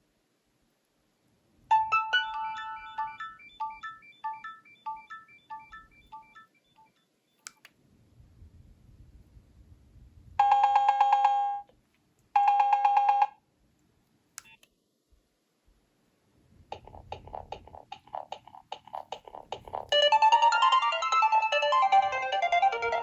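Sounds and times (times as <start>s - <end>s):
phone ringtone melody: 1.7s - 7.0s, 19.8s - 23.0s
click: 6.8s - 7.8s.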